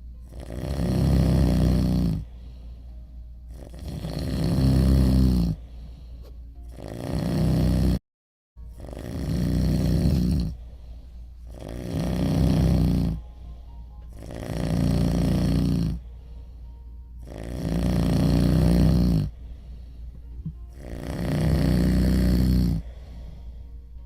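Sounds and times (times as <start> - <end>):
loud snoring: 0.2 - 2.3, 3.5 - 5.6, 6.6 - 8.0, 8.7 - 10.6, 11.4 - 13.3, 14.1 - 16.1, 17.2 - 19.4, 20.4 - 23.2.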